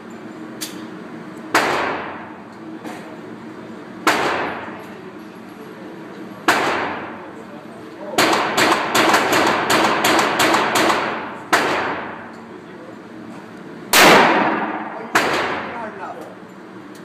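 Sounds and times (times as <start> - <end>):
handgun shots echoing: 14.0 - 15.7.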